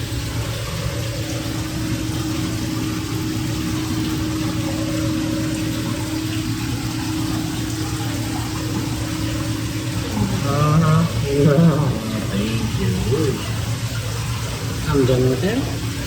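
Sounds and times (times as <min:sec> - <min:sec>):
machine hum: 0:00.0 - 0:16.0
held tone: 0:01.3 - 0:13.5.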